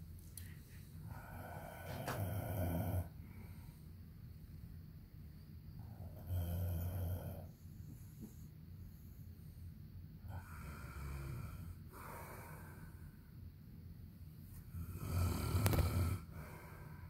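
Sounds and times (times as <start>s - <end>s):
quiet breathing: 0.0s - 17.0s
man snoring: 1.2s - 3.2s, 6.1s - 7.5s, 10.3s - 12.8s, 14.7s - 16.6s.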